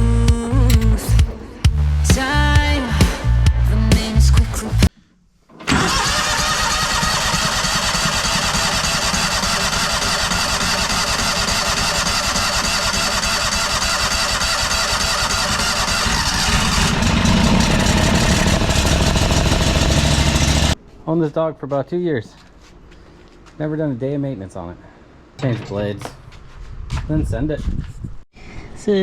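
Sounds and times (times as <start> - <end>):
mower engine running: 0.6 - 1.5, 5.5 - 20.8.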